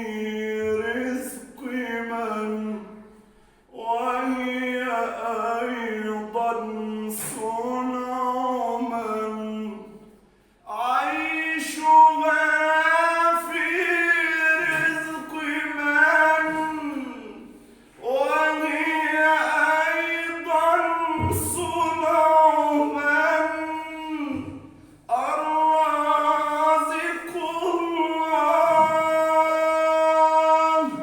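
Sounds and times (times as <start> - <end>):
person singing unaccompanied: 18.0 - 31.0.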